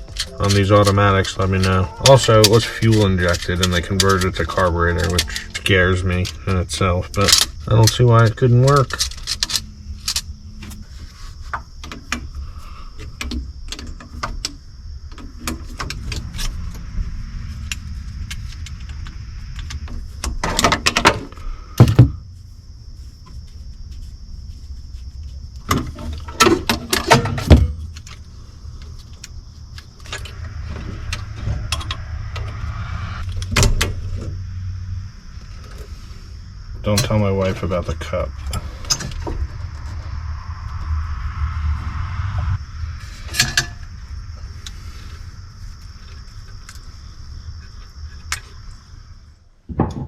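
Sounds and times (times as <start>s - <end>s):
tools and metal parts clinking: 0.0s - 10.8s
faint high whine: 0.0s - 13.2s, 14.4s - 49.5s.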